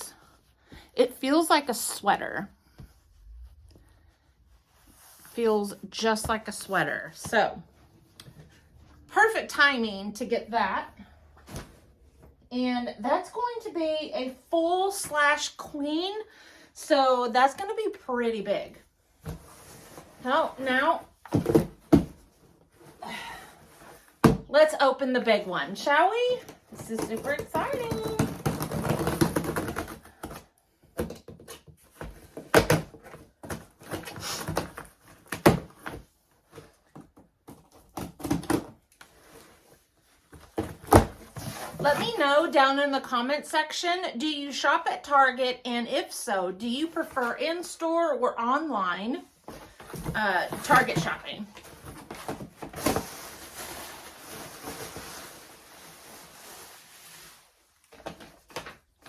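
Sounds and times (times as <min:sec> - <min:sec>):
knocks and thuds on cardboard box: 0:21.2 - 0:22.3, 0:26.8 - 0:36.0
cardboard scraping and rustling: 0:49.5 - 0:58.7.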